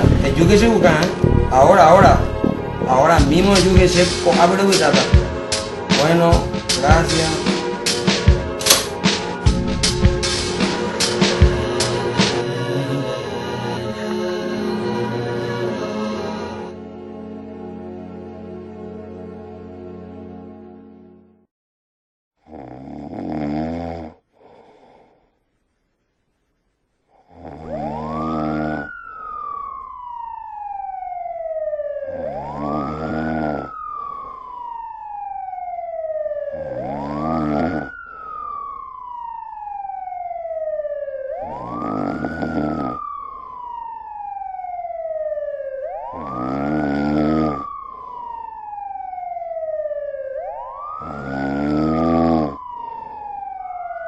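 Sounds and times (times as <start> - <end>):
siren wailing: 0.0 - 16.8, 27.6 - 54.0
loud rasping snoring: 22.4 - 25.0, 27.2 - 29.0, 32.2 - 33.8, 36.6 - 38.0, 41.5 - 43.0, 46.1 - 47.7, 51.0 - 52.6.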